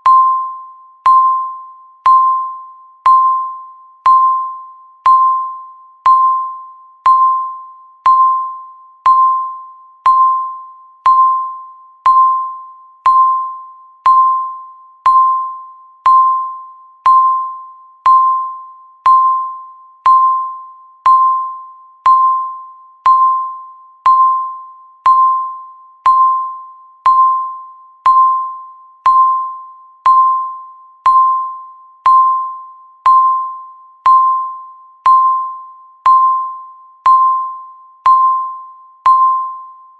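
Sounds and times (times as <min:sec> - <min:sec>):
timer beeping: 0:00.0 - 0:39.9.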